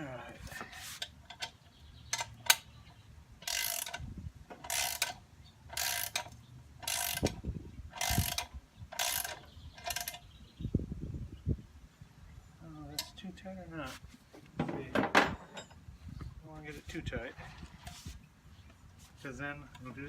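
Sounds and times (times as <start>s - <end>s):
ratchet wrench clicking: 3.4s - 4.0s, 4.6s - 10.2s.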